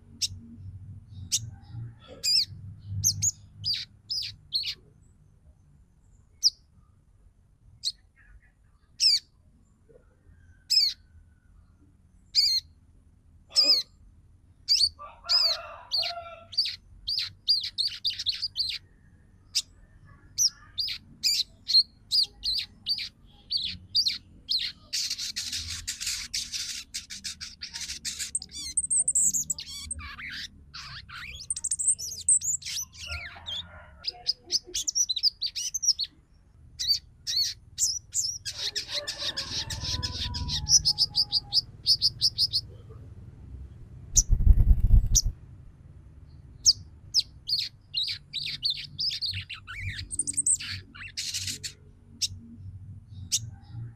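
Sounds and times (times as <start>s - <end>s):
bird chirping: 0.0s - 7.0s, 7.8s - 12.8s, 13.5s - 45.4s, 46.2s - 53.9s
hissing bird chatter: 20.4s - 33.1s, 44.2s - 45.3s.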